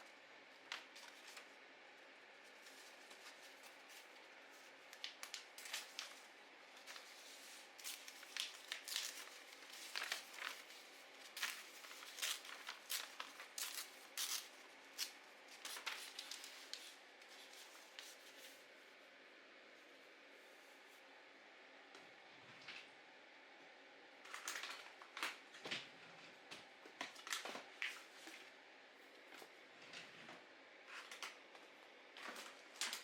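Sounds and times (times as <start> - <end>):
paper crackling and tearing: 4.8 - 18.2.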